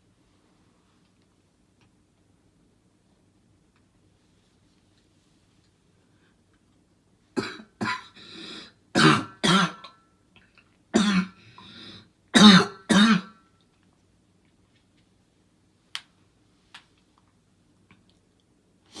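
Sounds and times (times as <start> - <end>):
person coughing hard: 7.4 - 8.2, 9.0 - 10.0, 11.0 - 11.4, 12.4 - 13.4.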